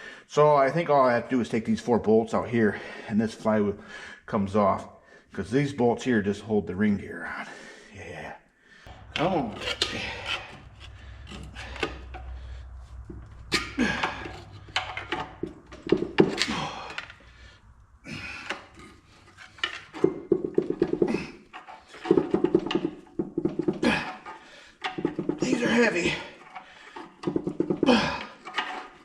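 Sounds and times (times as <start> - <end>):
wrench knocking on bolts: 9.1 - 17.2, 18.4 - 26.6.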